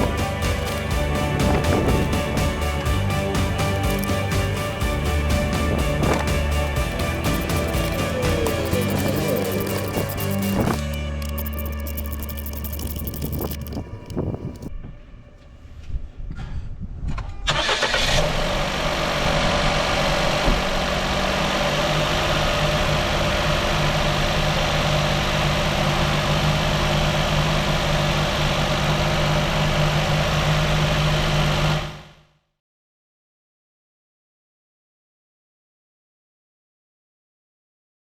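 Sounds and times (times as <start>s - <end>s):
car engine starting and idling: 0.0s - 14.7s, 17.5s - 32.0s.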